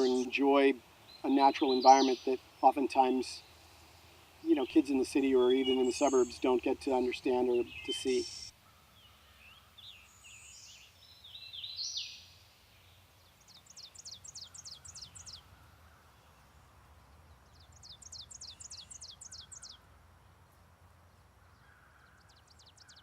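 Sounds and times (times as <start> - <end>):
songbirds singing: 0.0 - 23.0.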